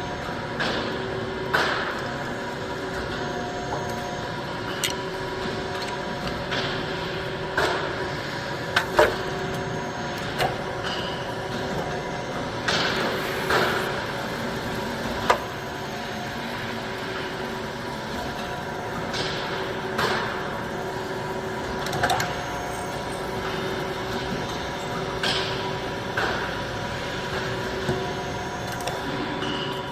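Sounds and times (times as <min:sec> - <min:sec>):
metalworking machine humming: 0:00.0 - 0:29.9.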